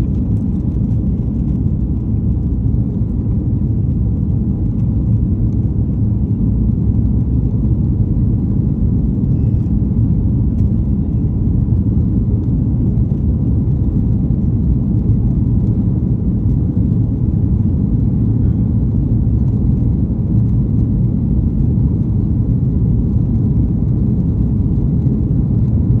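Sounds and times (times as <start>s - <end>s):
jet engine rumble in cabin: 0.0s - 26.0s.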